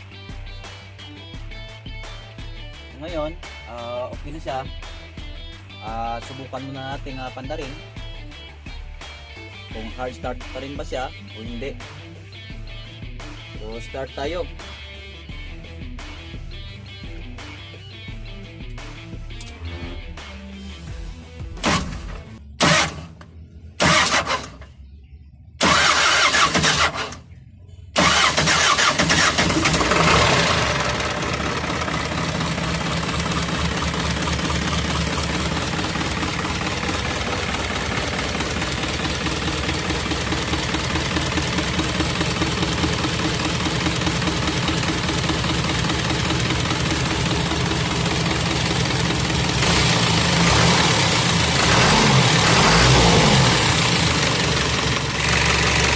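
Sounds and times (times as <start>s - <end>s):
diesel engine cranking: 21.6s - 24.8s, 25.6s - 55.9s
diesel engine idling: 21.6s - 55.9s.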